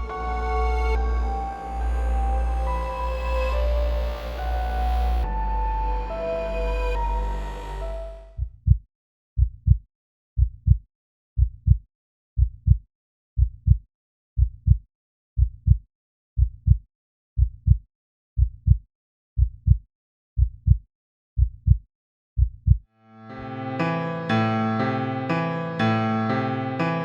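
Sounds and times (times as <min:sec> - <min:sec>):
heartbeat thumps: 0:08.4 - 0:08.8, 0:09.4 - 0:09.8, 0:10.4 - 0:10.8, 0:11.4 - 0:11.8, 0:12.4 - 0:12.8, 0:13.4 - 0:13.8, 0:14.4 - 0:14.8, 0:15.4 - 0:15.8, 0:16.4 - 0:16.8, 0:17.4 - 0:17.8, 0:18.4 - 0:18.8, 0:19.4 - 0:19.8, 0:20.4 - 0:20.8, 0:21.4 - 0:21.8, 0:22.4 - 0:22.8.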